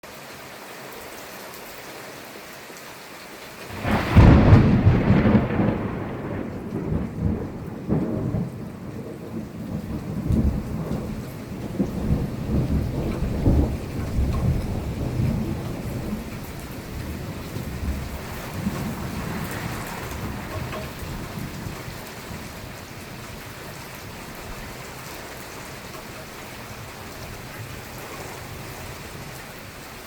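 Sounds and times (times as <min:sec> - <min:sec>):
rain hiss: 0:00.0 - 0:30.0
thunder crash and rumble: 0:03.7 - 0:22.7.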